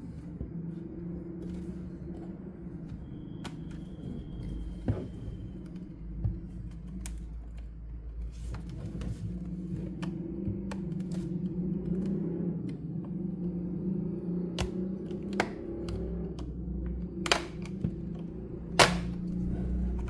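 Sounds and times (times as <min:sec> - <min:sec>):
steady low hum: 0:00.0 - 0:20.0
tools and parts clicking and tapping: 0:14.6 - 0:20.0.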